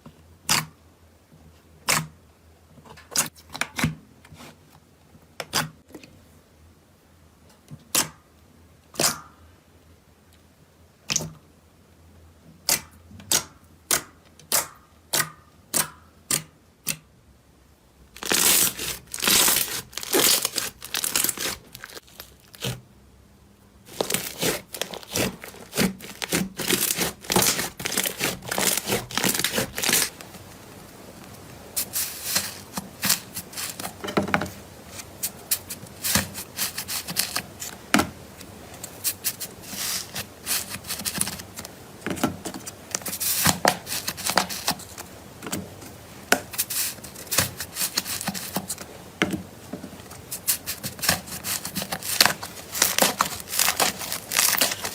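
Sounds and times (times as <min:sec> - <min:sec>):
slime crackling and tearing: 0:18.2 - 0:22.8, 0:23.8 - 0:30.4, 0:31.8 - 0:33.9, 0:35.2 - 0:37.8, 0:46.5 - 0:48.8, 0:50.4 - 0:54.9.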